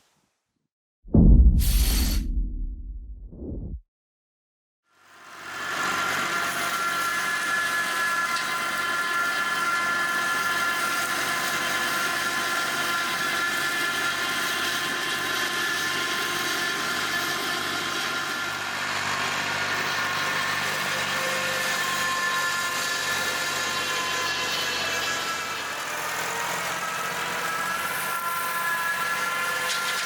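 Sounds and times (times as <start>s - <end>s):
steady high whine: 1.1s - 3.8s
tractor mulcher running: 14.6s - 22.8s, 25.1s - 28.4s.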